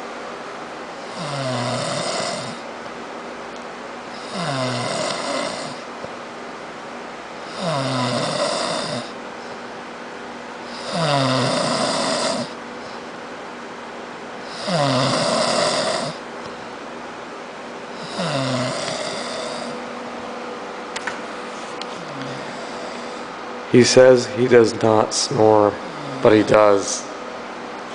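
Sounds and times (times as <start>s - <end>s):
man snoring heavily: 1.0s - 2.7s, 4.1s - 5.9s, 7.4s - 9.2s, 10.7s - 12.6s, 14.4s - 16.2s, 17.9s - 19.8s, 22.0s - 23.3s.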